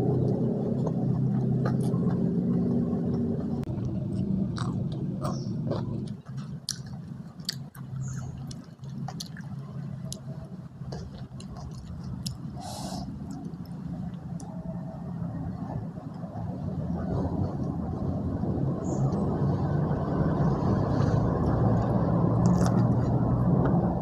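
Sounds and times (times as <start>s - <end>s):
person chewing food: 0.0s - 14.5s, 21.4s - 23.4s
low steady hum: 0.0s - 24.0s
mouth clicks: 3.1s - 10.3s, 10.9s - 13.8s.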